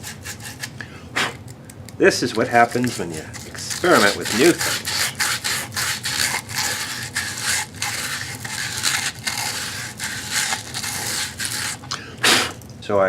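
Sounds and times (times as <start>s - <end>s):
sanding wood by hand: 2.3s - 11.8s.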